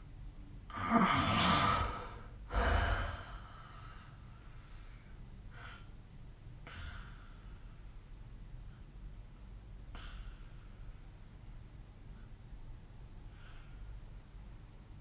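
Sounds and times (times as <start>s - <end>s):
person snoring: 0.7s - 3.4s.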